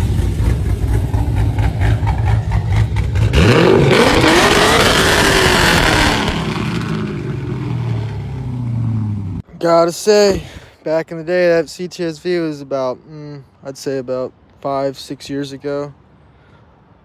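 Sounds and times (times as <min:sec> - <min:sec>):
car engine rumbling and revving: 0:00.0 - 0:09.5.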